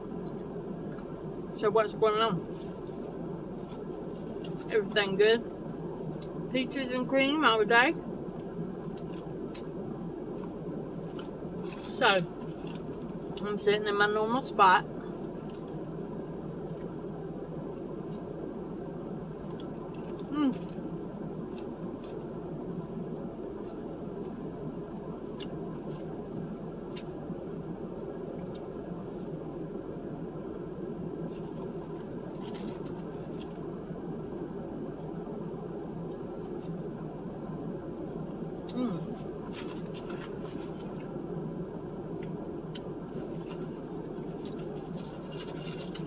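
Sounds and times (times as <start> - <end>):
low background hum: 0.0 - 46.0
low background noise: 0.0 - 46.0
chewing and mouth sounds: 2.5 - 4.7, 38.6 - 41.2, 42.2 - 46.0.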